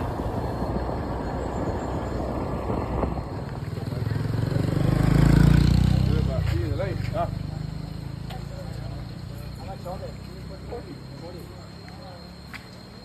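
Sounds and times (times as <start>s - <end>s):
motor scooter engine running: 0.0s - 0.9s, 3.3s - 9.4s
road and wind noise: 0.0s - 13.0s.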